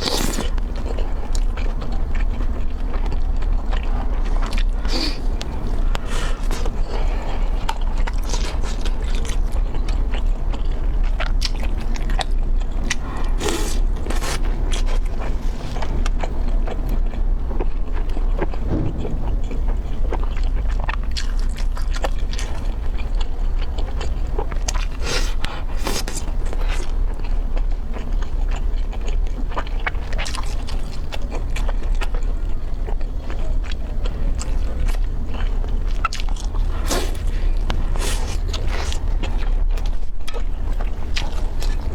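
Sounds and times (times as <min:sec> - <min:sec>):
person chewing crunchy food: 0:00.0 - 0:41.9
steady low hum: 0:00.0 - 0:41.9.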